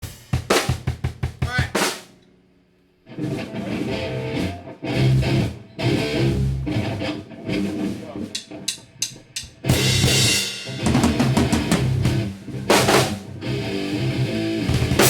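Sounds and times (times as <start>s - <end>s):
band playing with drums and guitar: 0.0s - 2.1s, 3.1s - 15.0s
drum kit hits: 0.0s - 2.1s, 8.3s - 13.3s, 14.7s - 15.0s.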